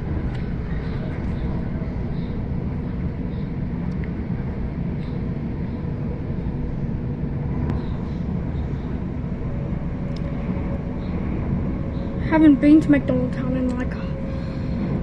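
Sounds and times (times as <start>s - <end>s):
train carriage rumble: 0.0s - 15.0s
faint clicks: 10.1s - 10.3s.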